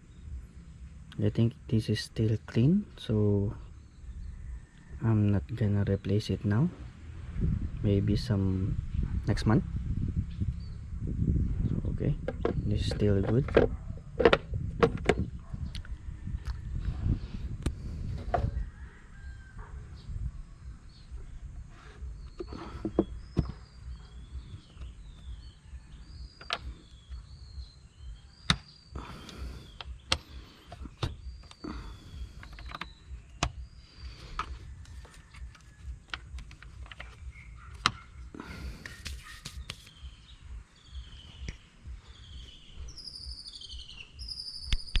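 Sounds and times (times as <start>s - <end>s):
small birds chirping: 0.0s - 45.0s.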